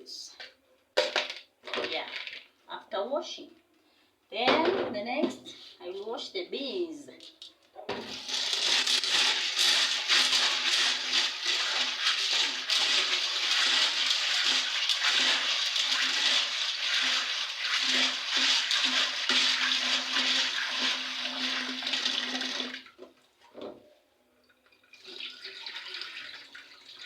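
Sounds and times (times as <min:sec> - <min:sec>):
water pouring into container: 0:08.0 - 0:23.0, 0:24.6 - 0:27.0.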